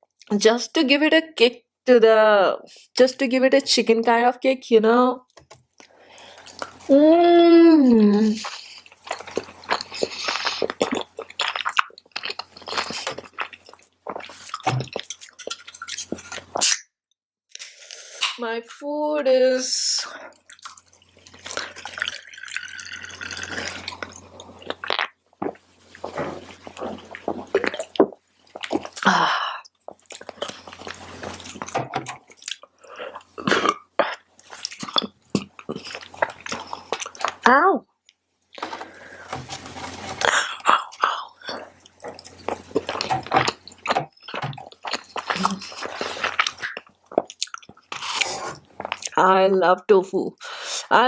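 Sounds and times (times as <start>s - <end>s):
person chewing food: 5.4s - 6.9s, 8.3s - 16.7s, 20.3s - 37.4s, 38.0s - 49.2s.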